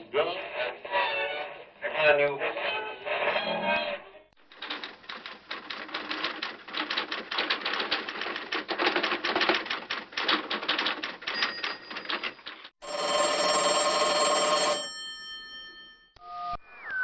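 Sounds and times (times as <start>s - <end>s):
typewriter key strikes: 4.5s - 12.7s.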